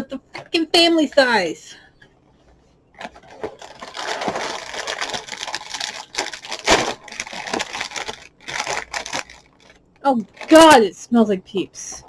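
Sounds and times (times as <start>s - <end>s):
plastic and cardboard crinkling: 2.3s - 10.8s
plastic bag tearing open: 3.1s - 9.6s.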